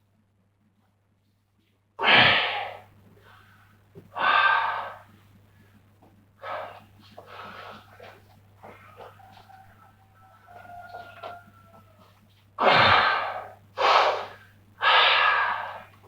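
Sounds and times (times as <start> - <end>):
forceful breaths: 2.0 - 9.5, 12.0 - 16.0.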